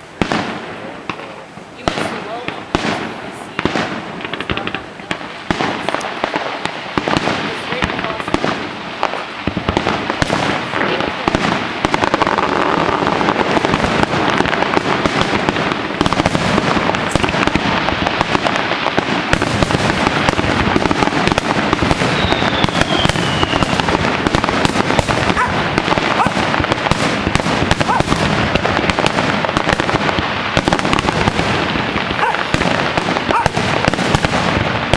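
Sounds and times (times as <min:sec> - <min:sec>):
fireworks bangs and crackles: 0:00.0 - 0:34.9
falling firework whistle: 0:21.9 - 0:24.0.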